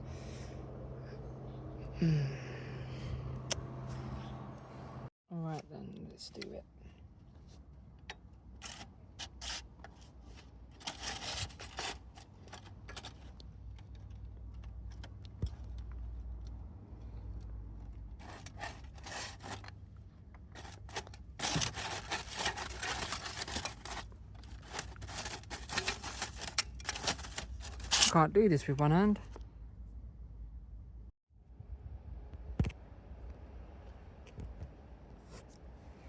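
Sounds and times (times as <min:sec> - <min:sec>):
tools scraping and rubbing: 0:18.2 - 0:28.2.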